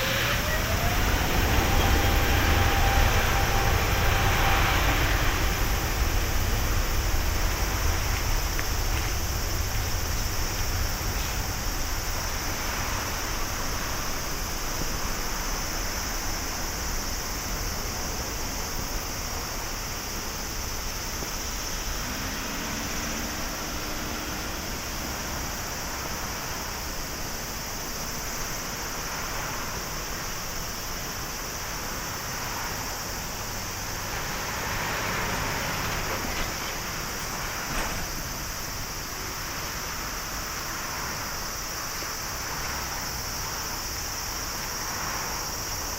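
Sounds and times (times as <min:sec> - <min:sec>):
jet engines climbing: 0:00.0 - 0:27.0.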